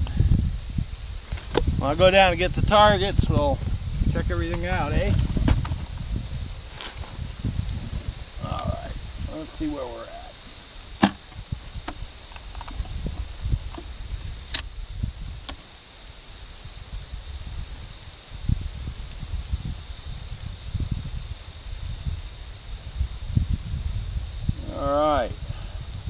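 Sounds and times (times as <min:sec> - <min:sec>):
microphone rumbles: 0:00.0 - 0:15.6, 0:16.6 - 0:26.0
insects chirping: 0:00.0 - 0:26.0
sharp click: 0:14.5 - 0:14.7.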